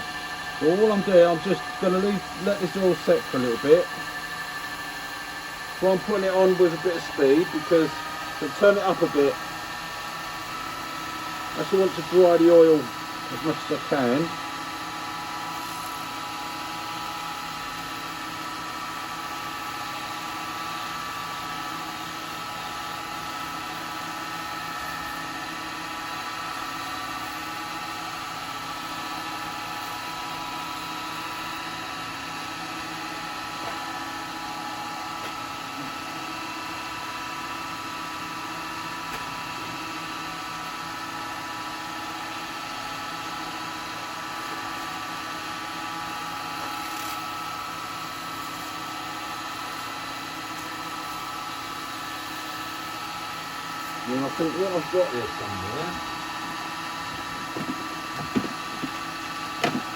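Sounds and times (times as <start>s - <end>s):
wood lathe motor humming: 0.0s - 27.3s, 49.4s - 59.9s.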